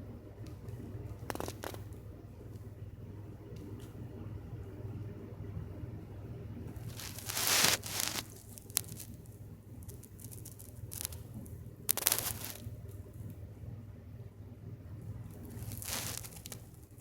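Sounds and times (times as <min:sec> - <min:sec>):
bird scuffling rustle: 0:06.8 - 0:09.2, 0:15.4 - 0:16.6.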